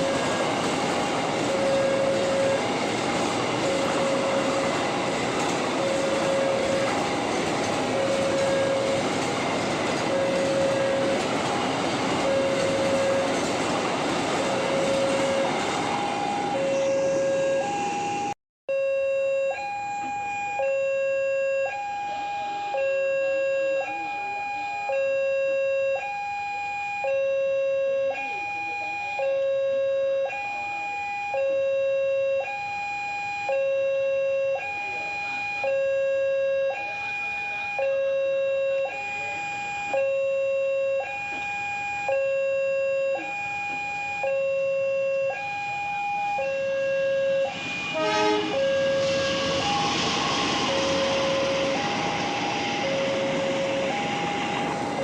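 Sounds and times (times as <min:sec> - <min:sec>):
train passing with rumble: 0:00.0 - 0:18.3, 0:47.4 - 0:55.0
two-tone crossing alarm: 0:00.0 - 0:55.0.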